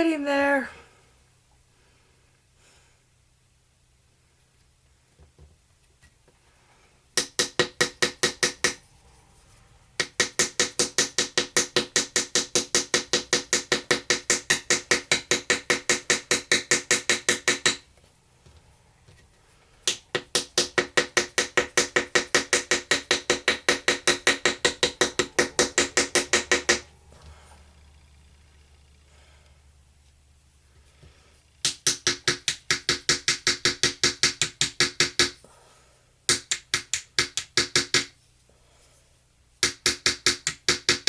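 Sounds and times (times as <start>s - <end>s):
hammer tapping metal chisel: 19.9s - 26.9s.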